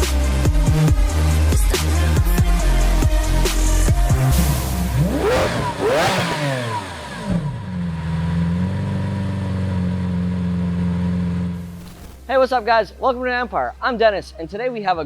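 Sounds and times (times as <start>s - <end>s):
car engine idling: 1.6s - 11.8s
car engine revving: 2.3s - 12.2s.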